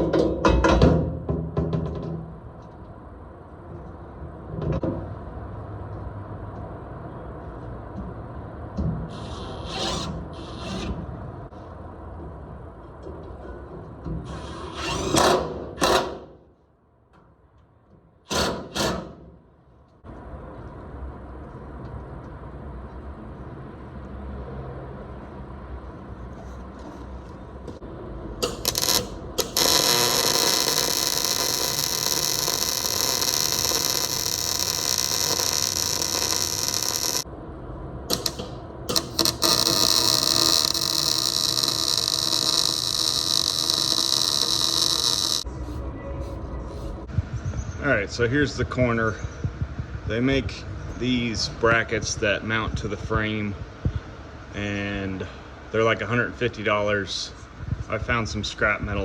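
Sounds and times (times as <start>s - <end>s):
background hum: 25.0s - 59.0s
power tool whirring: 28.4s - 37.2s, 38.1s - 45.5s.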